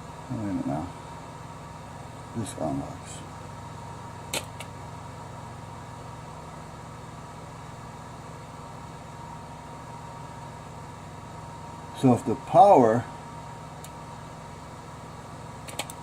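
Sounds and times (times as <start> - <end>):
electrical hum: 0.0 - 16.0
sharp click: 4.3 - 4.7, 15.6 - 16.0.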